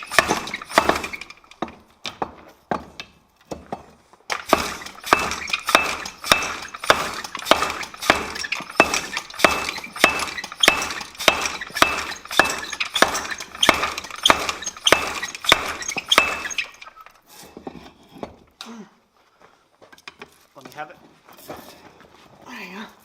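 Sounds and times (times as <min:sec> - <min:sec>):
hammer striking steel bar: 0:04.4 - 0:16.8.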